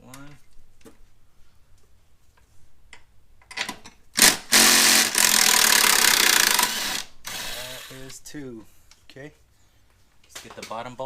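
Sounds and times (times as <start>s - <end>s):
handheld power tool running: 4.2s - 8.1s.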